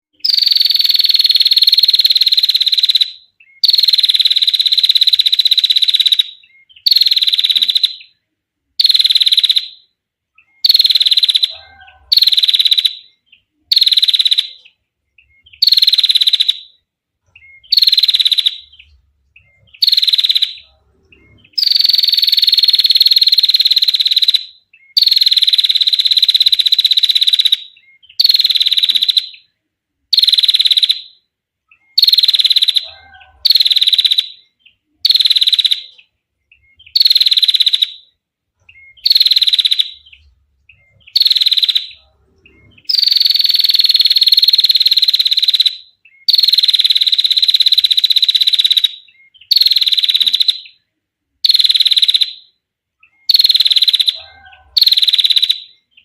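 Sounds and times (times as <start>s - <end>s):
bird rattling trill: 42.9s - 45.6s.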